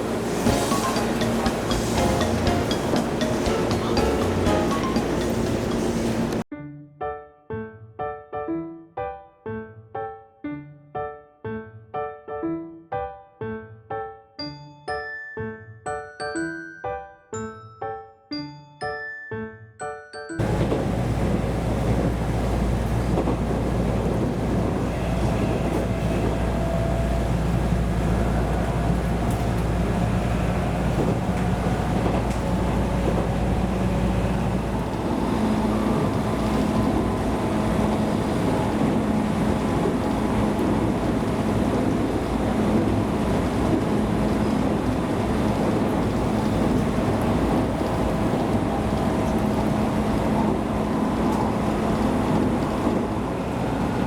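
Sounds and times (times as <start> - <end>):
train wheels rumbling: 0.0 - 6.4, 20.4 - 54.0.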